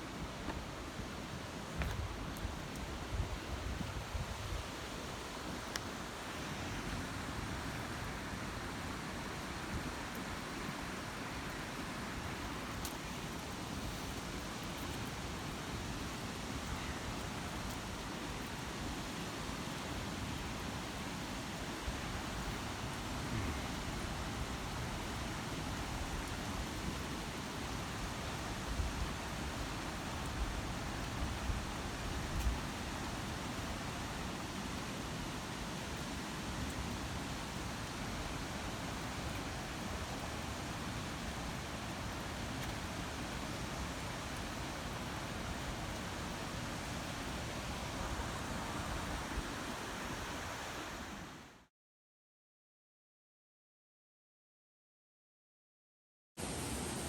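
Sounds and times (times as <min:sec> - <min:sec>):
waterfall rushing: 0:56.4 - 0:57.0.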